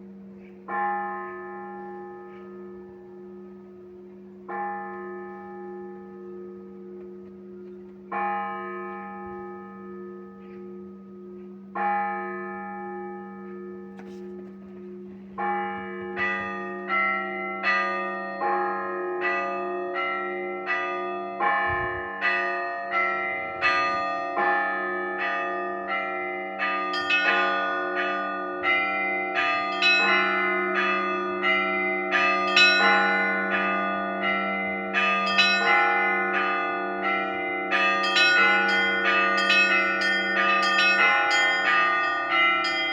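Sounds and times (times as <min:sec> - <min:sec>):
church bells ringing: 0:00.0 - 0:42.9.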